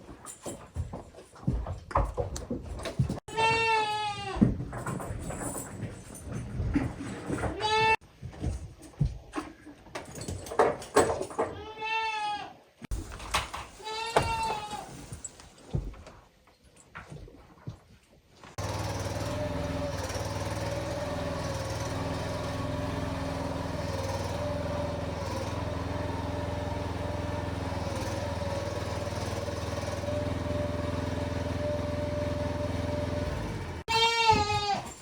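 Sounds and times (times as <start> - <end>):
goat bleating: 3.3 - 4.4, 11.6 - 12.6, 33.9 - 35.0.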